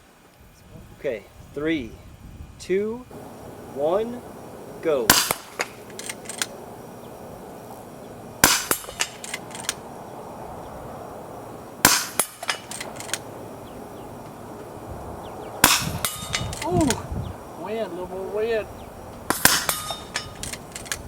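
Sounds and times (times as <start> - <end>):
air rifle shots: 3.1 - 10.0, 11.4 - 14.8, 15.4 - 17.0, 19.2 - 21.0
small mechanical clicks: 5.6 - 6.5, 12.5 - 13.2, 20.2 - 21.0.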